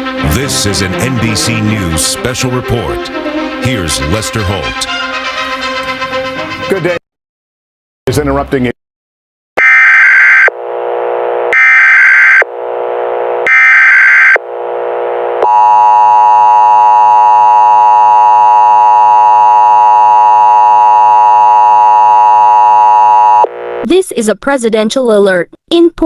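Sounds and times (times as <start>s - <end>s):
two-tone attention alarm: 9.6s - 10.6s, 11.5s - 12.5s, 13.4s - 14.4s
data screech bursts: 13.5s - 14.4s.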